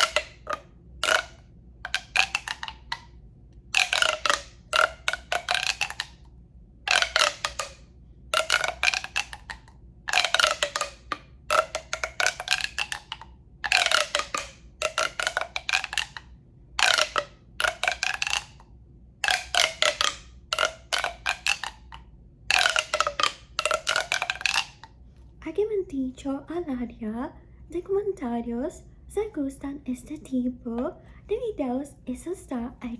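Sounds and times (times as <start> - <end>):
rapid clicking in a tube: 0.0 - 3.1, 3.7 - 6.3, 6.9 - 25.0.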